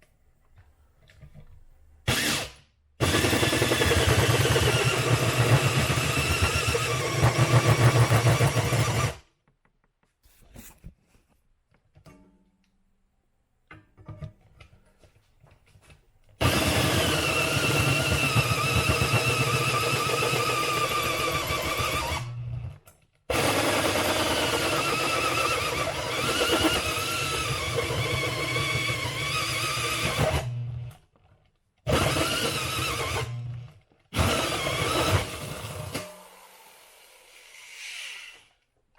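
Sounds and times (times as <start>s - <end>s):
electric drill whining: 2.1s - 9.2s, 16.4s - 22.5s, 23.3s - 30.6s, 31.9s - 33.5s, 34.2s - 37.6s.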